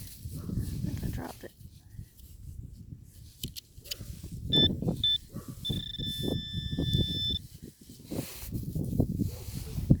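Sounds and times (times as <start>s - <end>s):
rustling in dirt: 0.0s - 10.0s
wind noise: 0.0s - 10.0s
metal detector beeping: 4.5s - 7.5s.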